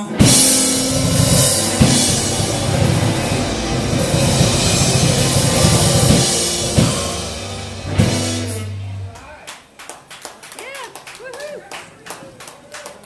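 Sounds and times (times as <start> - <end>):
drum kit with cymbals: 0.0 - 9.3
live blues band playing: 0.0 - 9.3.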